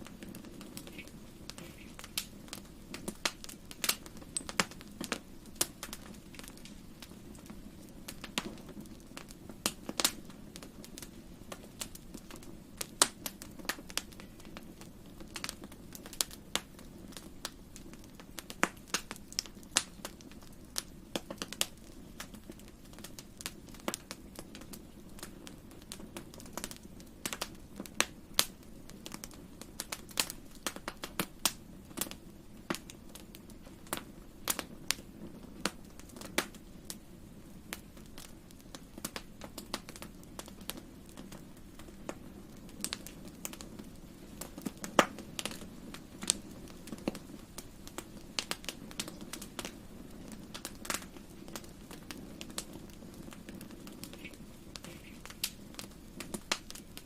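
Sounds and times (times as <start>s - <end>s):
low rumble of flames: 0.0s - 57.0s
wood fire crackling and popping: 0.0s - 57.0s.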